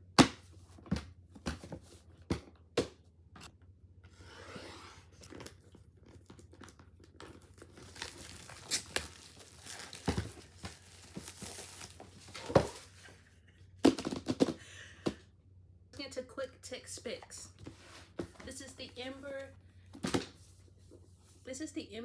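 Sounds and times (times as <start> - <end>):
box packaging tearing and crinkling: 5.0 - 13.0.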